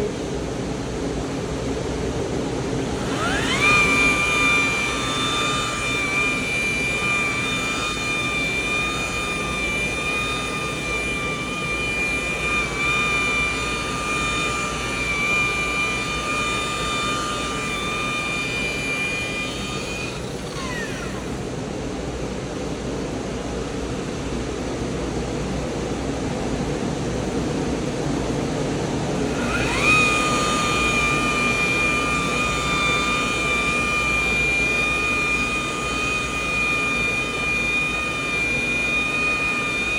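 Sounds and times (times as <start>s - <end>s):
rotary buffer whining: 2.4s - 21.7s, 29.0s - 39.9s.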